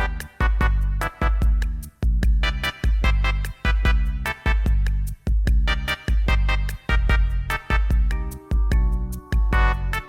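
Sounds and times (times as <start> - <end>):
pulsing bass notes: 0.0 - 10.0.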